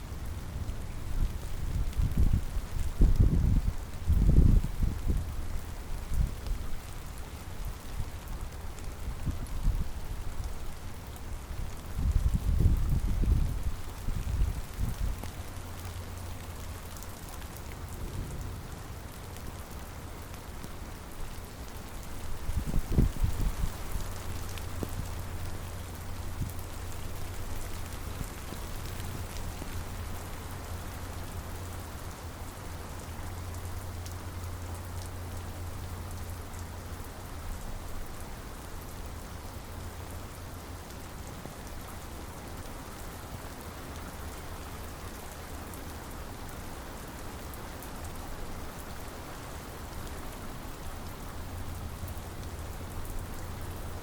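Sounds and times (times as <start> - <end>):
steady rain: 0.0 - 54.0
raindrops ticking: 4.8 - 54.0.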